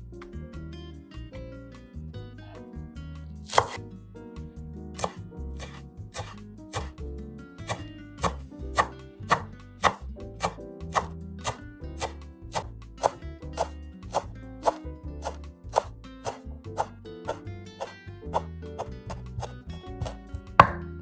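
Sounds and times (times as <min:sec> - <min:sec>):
soft background music: 0:00.0 - 0:21.0
knife chopping on cutting board: 0:03.4 - 0:03.8, 0:05.0 - 0:07.0, 0:07.7 - 0:21.0.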